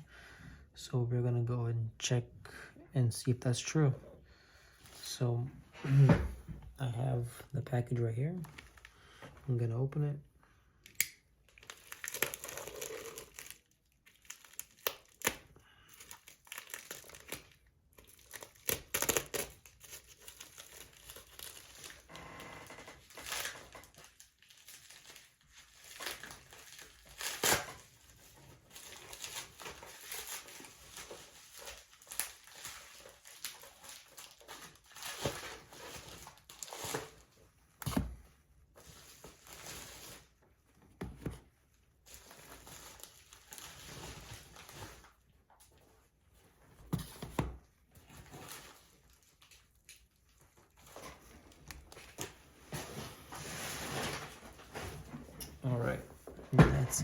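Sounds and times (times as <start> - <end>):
packaging crinkling and tearing: 11.4 - 38.0, 38.8 - 40.5, 41.9 - 45.8, 48.1 - 52.4.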